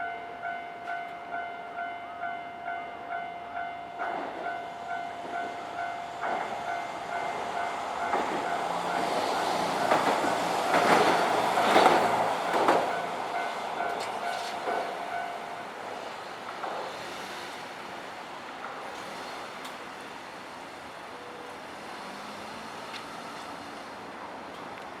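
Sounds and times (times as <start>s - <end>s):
level-crossing alarm ringing: 0.1s - 15.8s
tram wheels clattering over rails: 4.0s - 17.9s.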